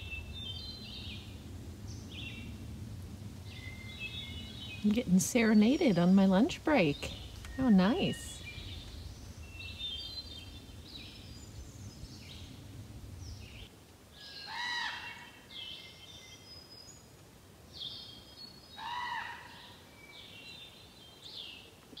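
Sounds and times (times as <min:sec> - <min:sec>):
low rumble: 0:00.0 - 0:13.7
birds chirping: 0:00.0 - 0:22.0.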